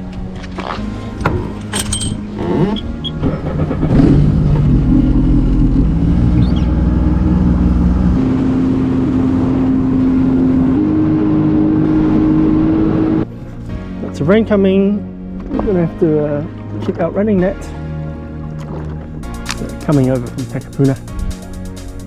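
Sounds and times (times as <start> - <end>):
jet ski engine running: 2.3 - 13.2, 19.2 - 22.0.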